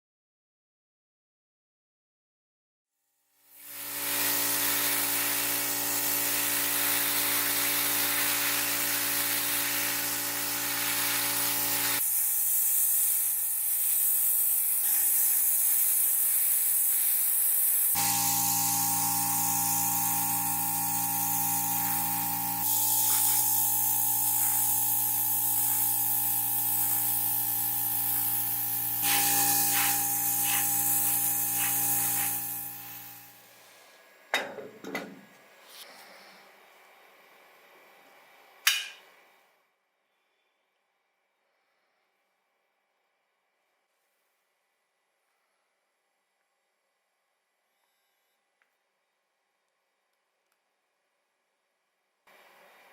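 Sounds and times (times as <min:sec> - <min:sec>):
cleaning sprayer motor hissing: 0:03.7 - 0:34.1.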